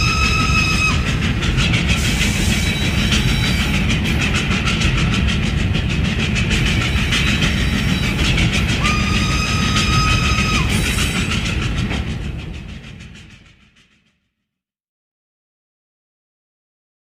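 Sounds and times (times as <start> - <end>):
train rumbling: 0.0 - 14.2.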